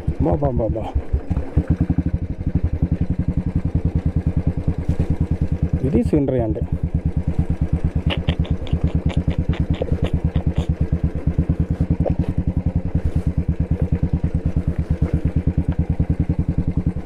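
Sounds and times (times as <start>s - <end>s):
motorcycle engine thumping: 0.0s - 17.0s.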